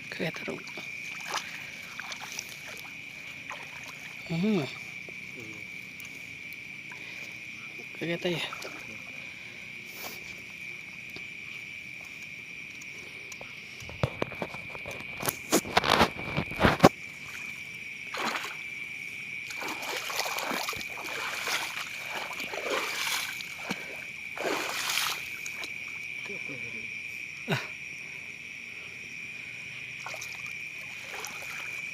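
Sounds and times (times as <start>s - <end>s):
water sloshing and splashing: 0.0s - 26.6s, 29.3s - 31.9s
high-pitched insect chorus: 0.0s - 31.9s.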